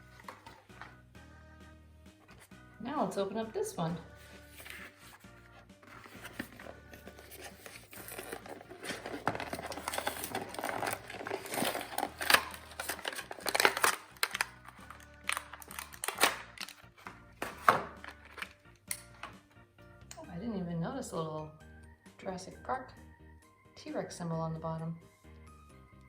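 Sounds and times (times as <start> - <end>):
quiet background music: 0.0 - 26.0
packaging crinkling and tearing: 5.9 - 18.6.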